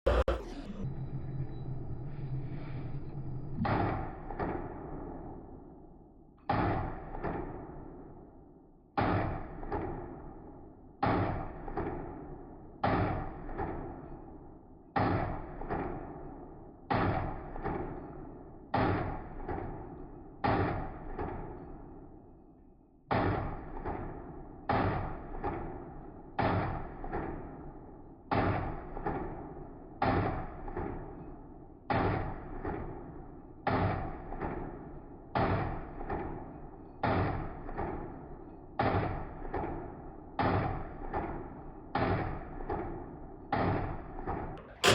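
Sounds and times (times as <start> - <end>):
pistol shots with ringing echo: 44.2 - 44.9.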